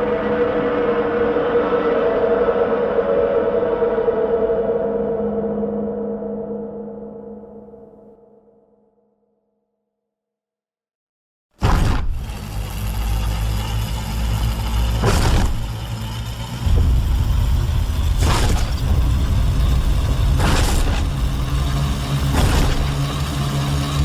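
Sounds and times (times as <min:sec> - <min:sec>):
monster deep rumble: 0:11.6 - 0:23.6.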